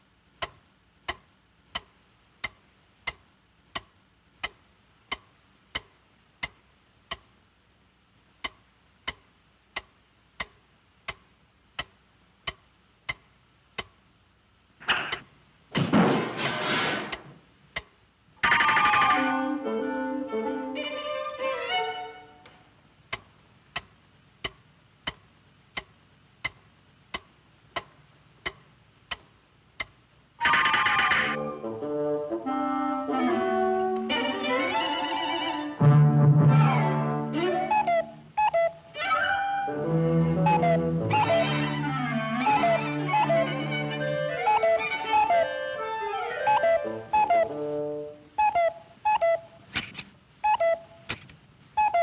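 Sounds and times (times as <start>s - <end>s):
clock ticking: 0.3s - 7.4s, 8.3s - 14.1s, 17.1s - 19.1s, 22.4s - 30.2s, 37.7s - 38.9s, 48.4s - 49.6s, 50.4s - 51.2s.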